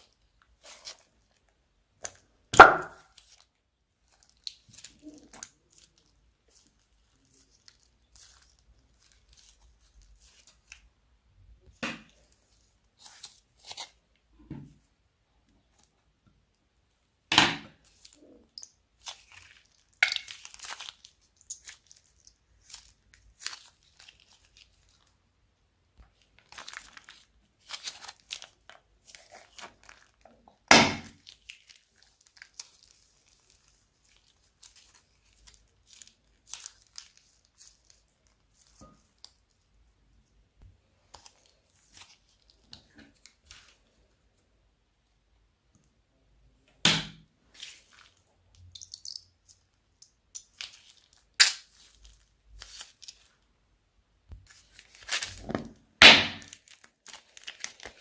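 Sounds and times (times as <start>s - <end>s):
slime worked by hand: 0.0s - 58.0s
plastic bags crinkling and tearing: 17.8s - 25.1s, 26.1s - 39.6s, 50.4s - 53.4s, 54.4s - 58.0s.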